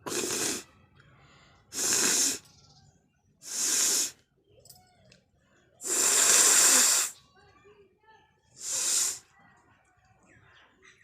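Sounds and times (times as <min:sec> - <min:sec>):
person blowing nose: 0:00.1 - 0:00.6, 0:01.8 - 0:02.4, 0:03.5 - 0:04.1, 0:05.8 - 0:07.2.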